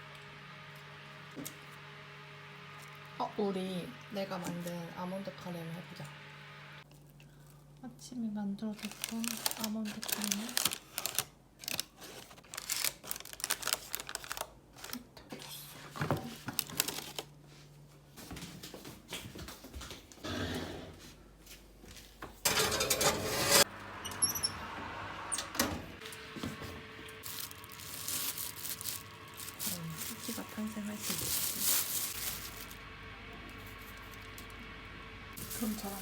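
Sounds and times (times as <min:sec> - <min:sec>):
dishes and pots clinking: 0:22.4 - 0:23.7.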